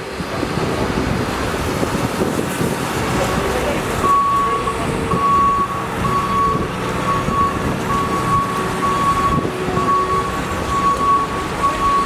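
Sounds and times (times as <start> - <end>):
low engine rumble: 0.0 - 12.0
reversing alarm beeping: 4.0 - 12.0.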